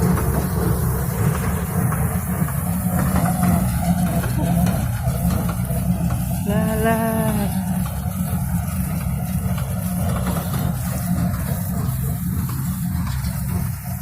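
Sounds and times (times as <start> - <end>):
tractor engine rumbling: 0.0 - 14.0.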